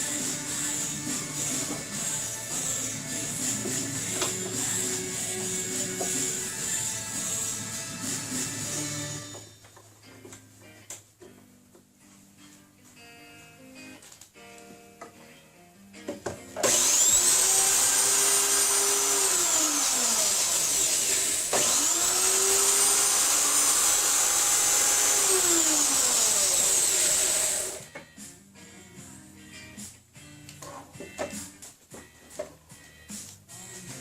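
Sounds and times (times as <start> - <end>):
quiet background music: 0.0 - 34.0
woodworking power tool running: 16.6 - 27.8.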